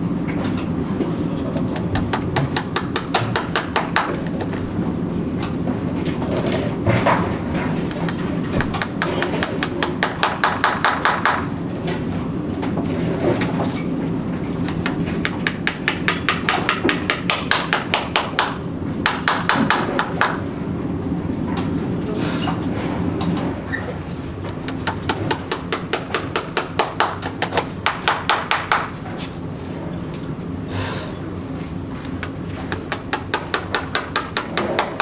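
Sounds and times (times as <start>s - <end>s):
hammer striking rapidly: 1.6s - 4.3s, 7.9s - 11.5s, 14.6s - 20.4s, 24.5s - 27.2s, 32.0s - 35.0s.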